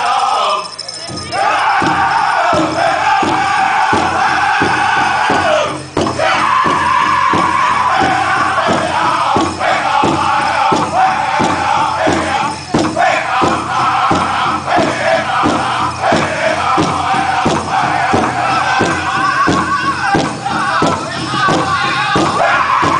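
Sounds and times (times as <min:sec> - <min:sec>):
high-pitched singers in unison: 0:00.0 - 0:22.9
big drum steady beat: 0:01.1 - 0:22.9.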